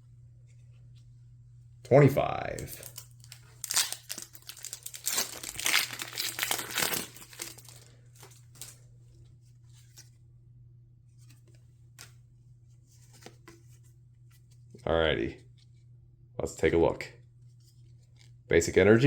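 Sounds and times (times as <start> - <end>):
foil wrapper tearing and crinkling: 2.6 - 8.8
faint clicks of pack handling: 2.6 - 10.2.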